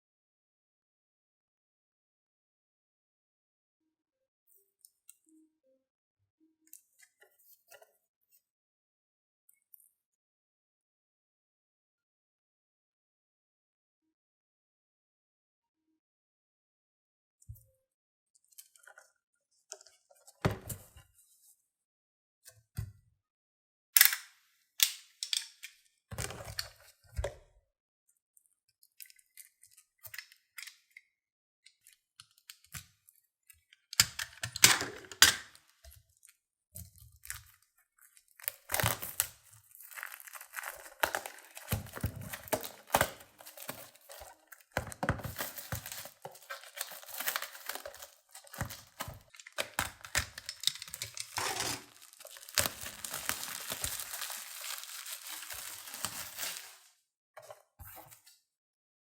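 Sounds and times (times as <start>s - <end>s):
plastic wrapping tearing and crinkling: 37.3s - 56.9s.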